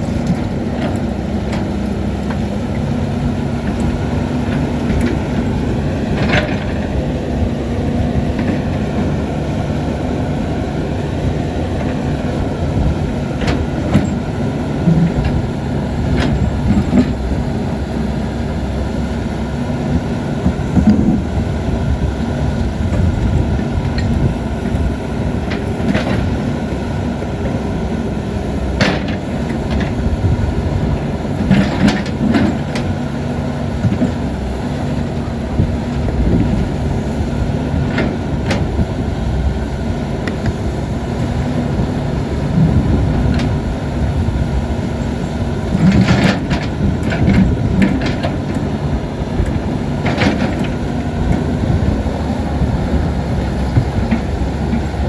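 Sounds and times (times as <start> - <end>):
excavator diesel engine running: 0.0 - 55.0
knocks and clanks of digging: 3.6 - 7.1, 16.0 - 17.2, 25.4 - 26.5, 28.7 - 30.4, 31.0 - 33.0, 37.6 - 38.9, 44.9 - 52.3.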